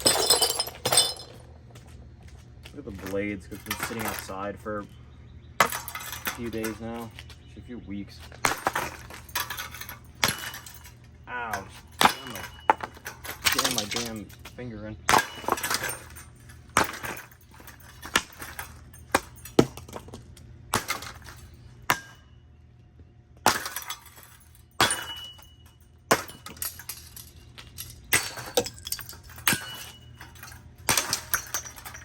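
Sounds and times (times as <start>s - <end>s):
brittle parts cracking and clinking: 2.8s - 4.6s, 5.6s - 7.4s, 8.3s - 22.3s, 23.4s - 32.0s
ceiling fan being smashed: 5.6s - 7.1s, 8.4s - 14.5s, 15.1s - 22.2s, 23.4s - 32.0s.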